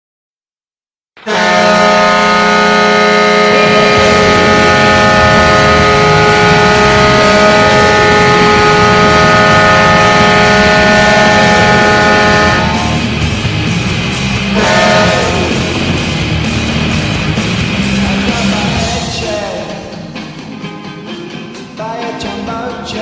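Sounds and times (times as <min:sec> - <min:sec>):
goal horn blast: 0:01.2 - 0:13.2, 0:14.4 - 0:17.0.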